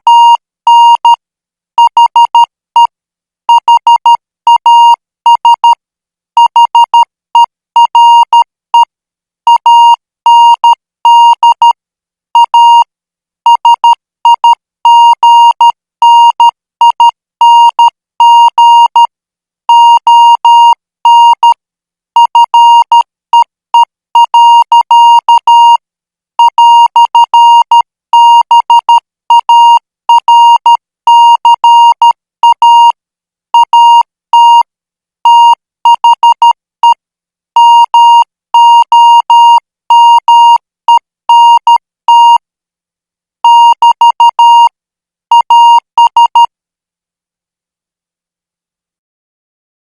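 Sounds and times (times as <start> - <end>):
morse code beeps: 26.4 - 32.9, 35.3 - 37.0, 37.6 - 42.4, 43.5 - 44.7, 45.3 - 46.5.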